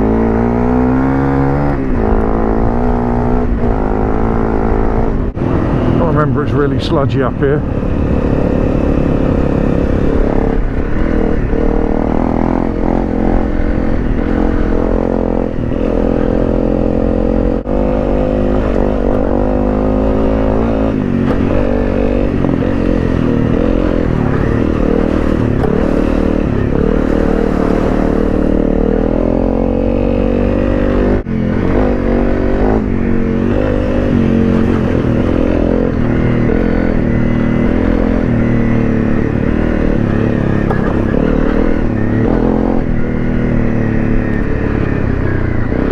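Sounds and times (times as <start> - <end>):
motorcycle engine revving: 0.0 - 45.9
bike clattering and scraping: 20.6 - 29.1, 40.0 - 41.9.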